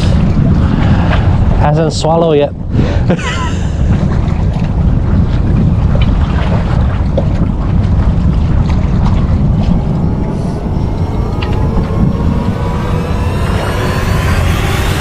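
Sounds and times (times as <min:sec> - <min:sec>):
low rumble: 0:00.0 - 0:15.0
motorboat engine running: 0:00.0 - 0:15.0.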